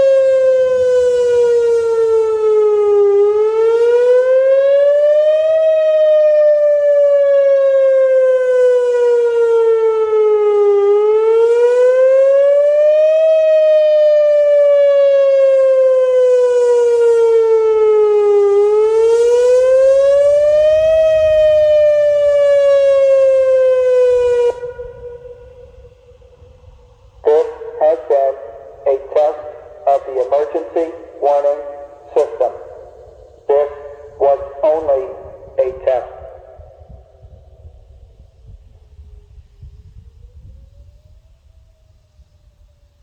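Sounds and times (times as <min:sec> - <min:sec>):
warning siren wailing: 0:00.0 - 0:43.0.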